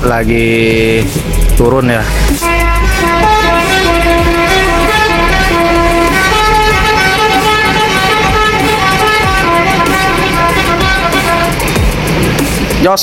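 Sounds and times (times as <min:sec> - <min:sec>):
bus engine rumble: 0:00.0 - 0:13.0
musical bus horn tune: 0:02.4 - 0:12.0.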